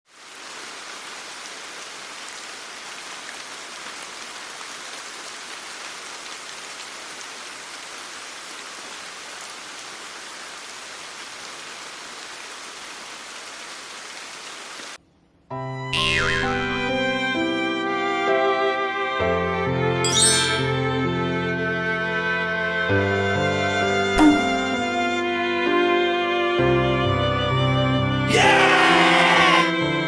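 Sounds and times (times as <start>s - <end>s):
steady rain falling: 0.1s - 15.0s, 28.3s - 29.9s.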